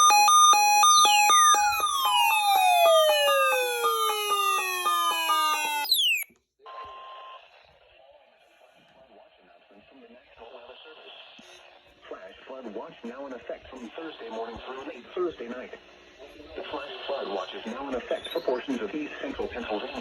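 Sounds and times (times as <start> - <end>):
electronic siren alert tones: 0.0 - 6.3.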